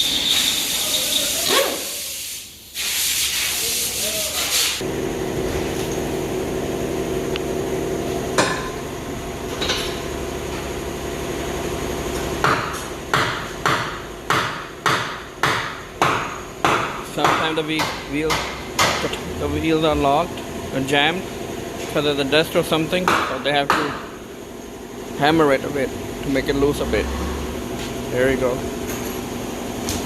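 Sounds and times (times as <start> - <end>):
air hiss: 0.0 - 4.8
machine hum: 4.8 - 13.2, 18.5 - 22.9.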